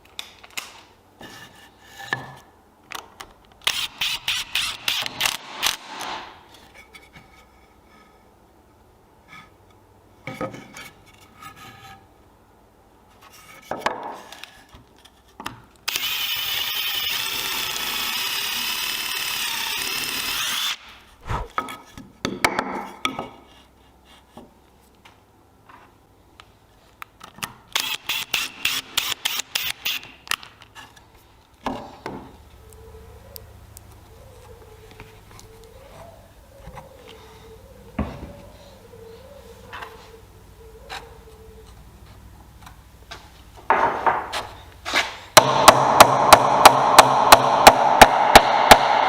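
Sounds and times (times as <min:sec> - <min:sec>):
power tool running: 0:15.9 - 0:20.8.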